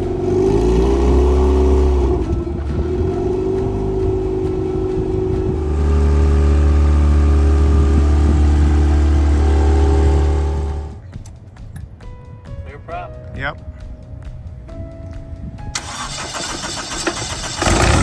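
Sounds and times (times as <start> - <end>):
light aircraft engine running: 0.0 - 11.0.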